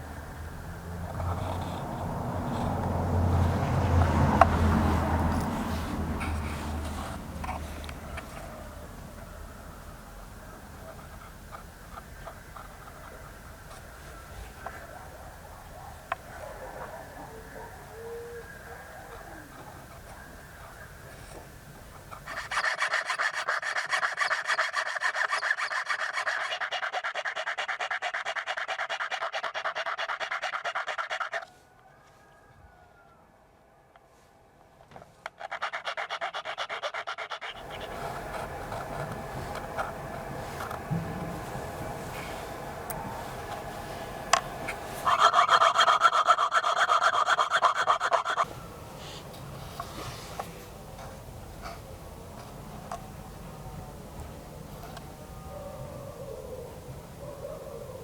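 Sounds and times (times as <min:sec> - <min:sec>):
hand tool scraping on metal: 0:22.1 - 0:30.2, 0:35.4 - 0:48.5
metal coin being filed: 0:22.2 - 0:31.4, 0:35.4 - 0:42.3, 0:44.4 - 0:48.5.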